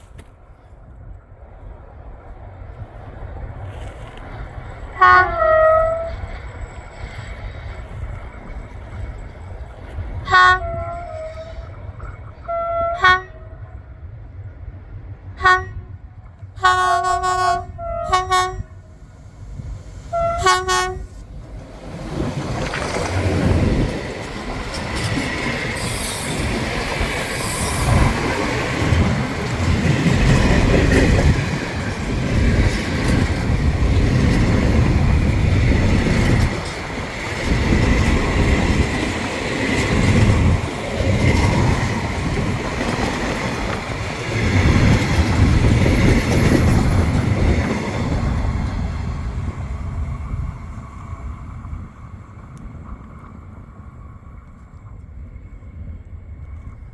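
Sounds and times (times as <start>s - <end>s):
train air horn blasts: 5.0s - 6.2s, 10.3s - 11.8s, 12.4s - 13.7s, 15.4s - 16.0s, 16.6s - 19.0s, 20.1s - 21.3s
train wheels clattering over rails: 21.2s - 50.0s.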